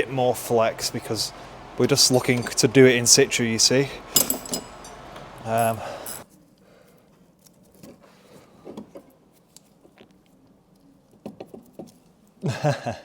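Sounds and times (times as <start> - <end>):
car parts being handled: 0.6 - 6.2
hand tools clicking and tapping: 1.0 - 6.2.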